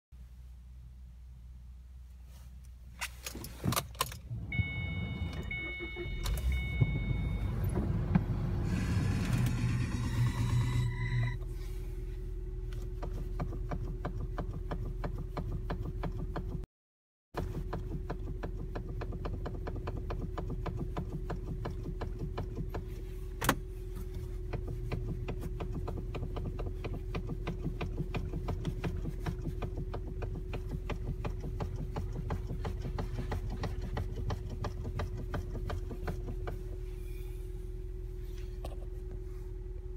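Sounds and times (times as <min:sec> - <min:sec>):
steady hum and low rumble: 0:00.2 - 0:16.6, 0:17.4 - 0:39.9
car steering knocking and clicking: 0:12.8 - 0:16.7, 0:17.4 - 0:36.8.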